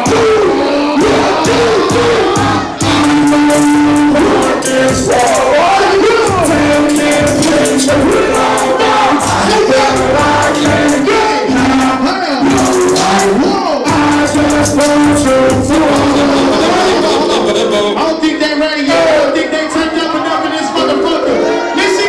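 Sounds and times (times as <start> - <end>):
hip-hop beat: 0.0 - 19.4, 20.6 - 22.0
sliding synth melody: 2.8 - 18.0, 20.8 - 22.0.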